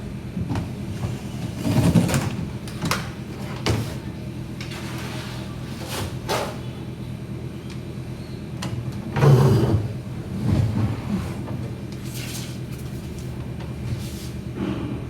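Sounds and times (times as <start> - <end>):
steady low hum: 5.4 - 15.0.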